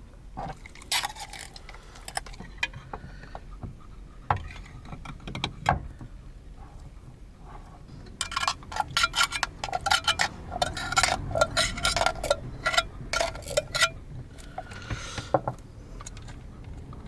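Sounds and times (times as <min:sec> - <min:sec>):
small hard objects clinking: 0:00.6 - 0:02.4, 0:08.2 - 0:14.8.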